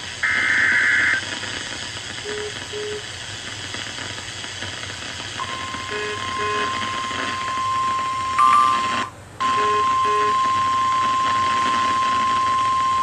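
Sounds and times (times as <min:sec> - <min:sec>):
radio static hiss: 0:00.0 - 0:09.6, 0:10.3 - 0:13.0
warning alarm tone: 0:05.4 - 0:13.0.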